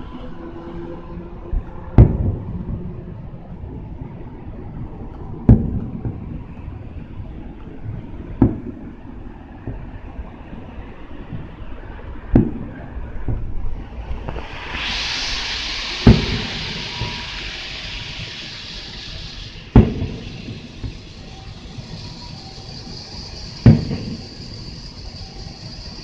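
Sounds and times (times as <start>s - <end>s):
steady hiss: 0.0s - 26.0s
firework shells booming: 2.0s - 2.8s, 5.5s - 6.4s, 8.2s - 9.0s, 12.3s - 13.6s, 16.0s - 25.9s.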